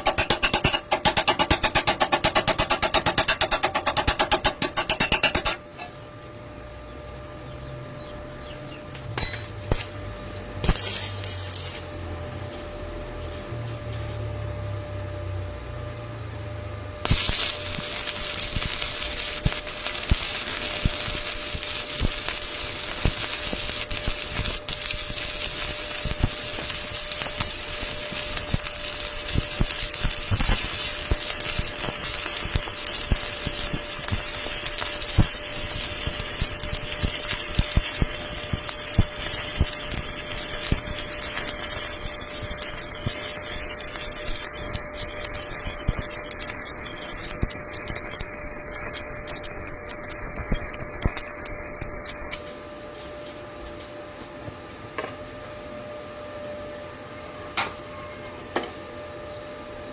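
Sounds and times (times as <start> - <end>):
welding arc crackling and hissing: 0.0 - 5.6, 9.7 - 12.0, 17.0 - 52.5
low hum: 4.6 - 53.5.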